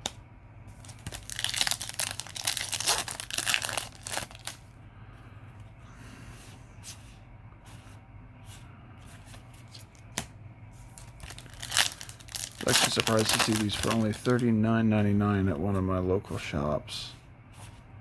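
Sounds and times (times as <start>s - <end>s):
foil wrapper tearing and crinkling: 0.8s - 4.6s, 11.0s - 14.4s.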